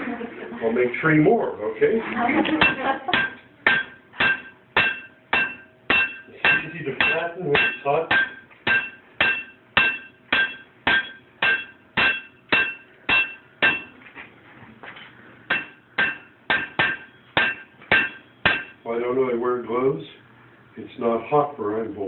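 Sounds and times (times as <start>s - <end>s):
hammer striking iron on anvil: 2.6s - 13.9s, 15.5s - 18.8s.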